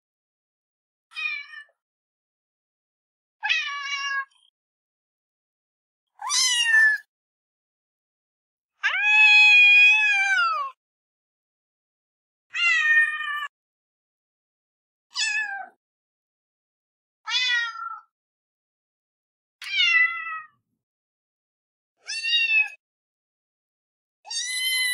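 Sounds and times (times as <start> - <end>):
cat meowing: 1.1 - 1.8, 3.4 - 4.4, 6.2 - 7.1, 8.8 - 10.8, 17.3 - 18.1, 19.6 - 20.6, 22.0 - 22.8, 24.3 - 24.9.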